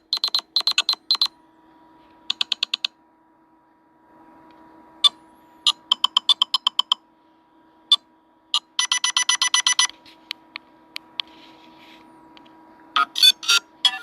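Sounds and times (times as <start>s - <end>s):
faint steady hum: 0.0s - 14.0s
electronic ringtone beeps: 8.6s - 9.9s.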